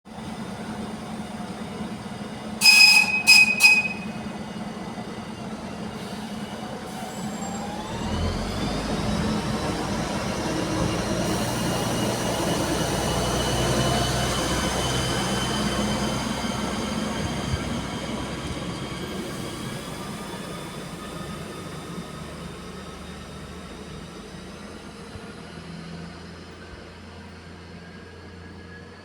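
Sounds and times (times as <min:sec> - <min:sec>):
railcar engine whine and rumble: 0:00.1 - 0:29.0
train horn toots: 0:02.6 - 0:04.3.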